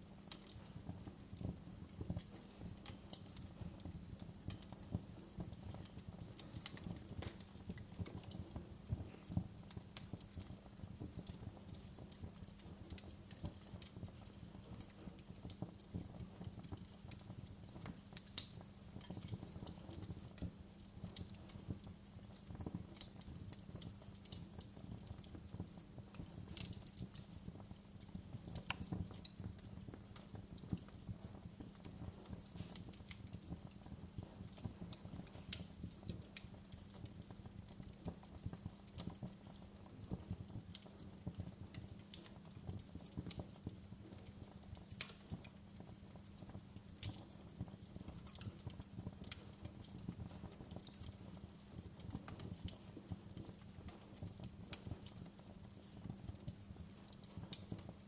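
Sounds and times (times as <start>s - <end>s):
fire crackling: 0.0s - 58.0s.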